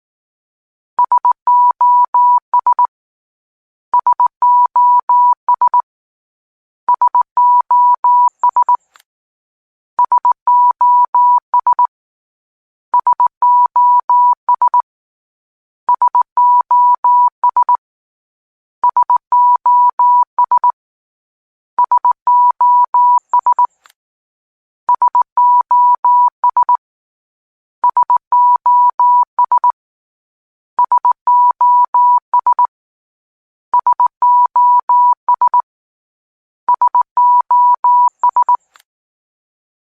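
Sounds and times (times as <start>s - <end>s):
morse code beeps: 6.9s - 8.8s, 10.0s - 11.9s, 13.0s - 14.8s, 15.9s - 17.8s, 18.8s - 20.8s, 21.8s - 23.7s, 24.9s - 26.8s, 27.8s - 29.8s, 30.8s - 32.7s, 33.8s - 35.6s, 36.7s - 38.6s.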